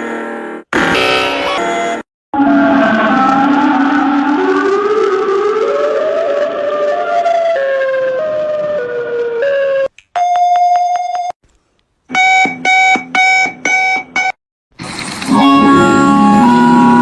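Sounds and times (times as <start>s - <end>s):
siren-like alert tone stepping in pitch: 0.8s - 7.7s.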